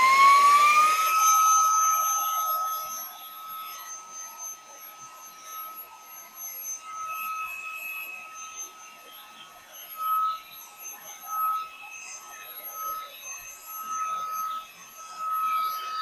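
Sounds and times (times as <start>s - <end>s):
handheld vacuum whining: 0.0s - 16.0s.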